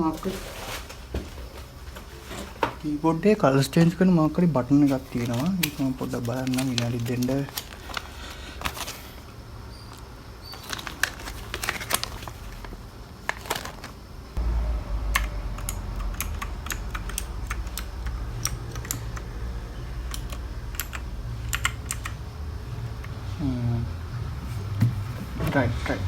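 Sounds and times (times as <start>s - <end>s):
low rumble: 14.4s - 21.4s
mechanical keyboard keys clicking: 15.2s - 19.3s, 20.1s - 22.2s.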